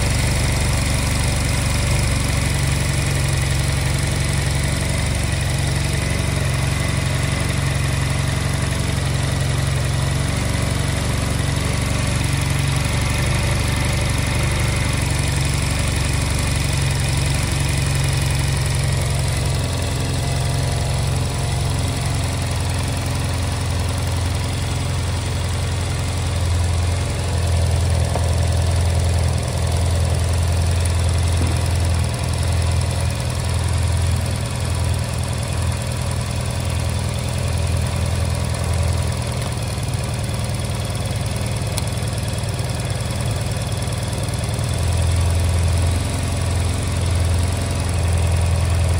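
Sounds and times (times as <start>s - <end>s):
scooter engine idling: 0.0s - 48.9s.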